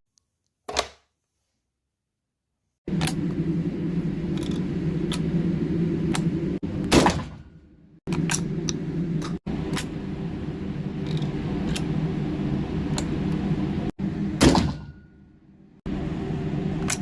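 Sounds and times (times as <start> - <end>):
steady low noise: 2.9 - 14.6
gunshot bang: 6.9 - 7.5, 14.4 - 15.0.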